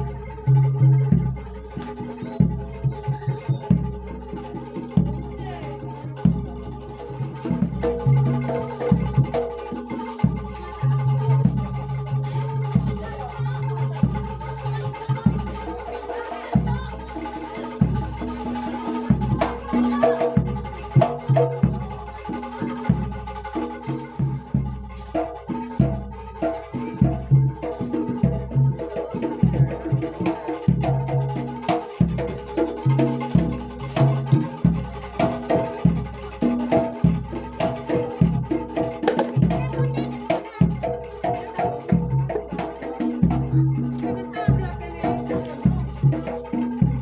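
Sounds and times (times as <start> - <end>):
gamelan-style percussion and drums: 0.0 - 47.0
deep bass drum booming: 27.1 - 47.0.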